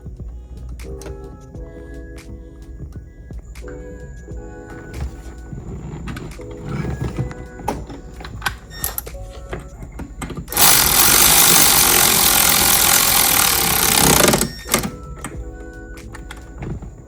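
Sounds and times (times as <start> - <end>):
power tool running: 10.5 - 14.8.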